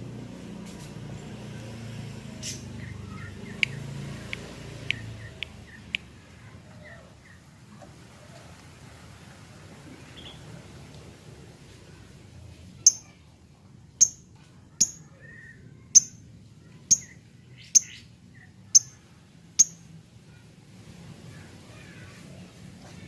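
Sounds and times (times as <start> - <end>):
bird chirping: 2.4 - 6.1, 12.8 - 13.2, 14.0 - 16.2, 16.8 - 19.0, 19.6 - 19.9.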